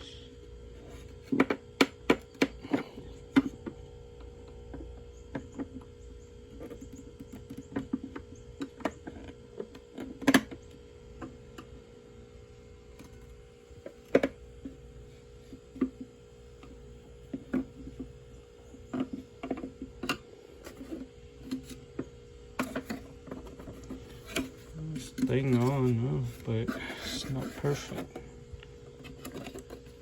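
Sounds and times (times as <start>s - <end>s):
plastic clicks and knocks: 18.8s - 24.6s.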